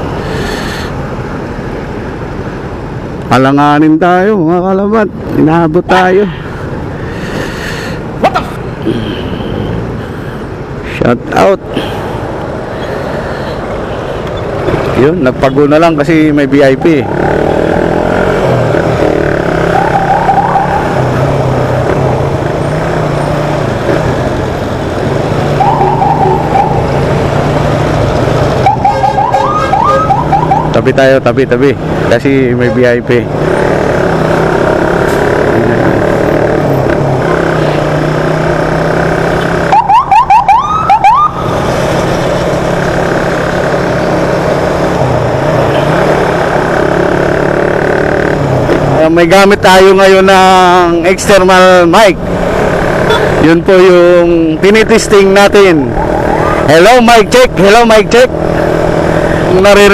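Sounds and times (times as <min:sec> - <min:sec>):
vehicle engine and road noise: 0:00.0 - 0:59.9
siren warbling yelps: 0:19.7 - 0:21.1, 0:25.6 - 0:27.0, 0:28.6 - 0:30.8, 0:39.7 - 0:41.5, 0:55.8 - 0:56.7.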